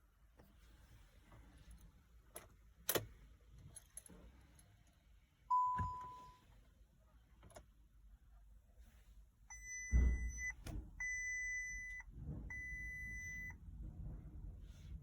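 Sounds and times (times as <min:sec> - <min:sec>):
low thump: 0:09.9 - 0:10.9.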